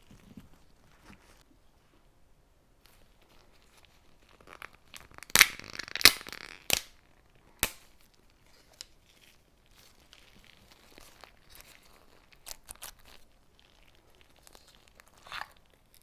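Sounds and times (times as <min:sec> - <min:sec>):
crunchy play material crackling: 0:02.8 - 0:16.0.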